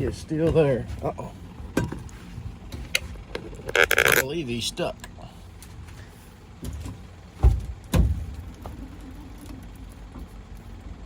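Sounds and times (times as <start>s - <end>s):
faint steady hum and rumble: 0.0s - 11.0s
dull heavy thumps: 6.6s - 8.5s.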